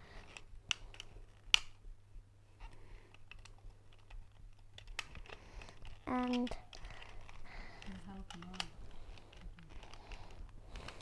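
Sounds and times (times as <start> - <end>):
faint low hum: 0.0 - 11.0
plastic toy parts clicking: 3.1 - 11.0.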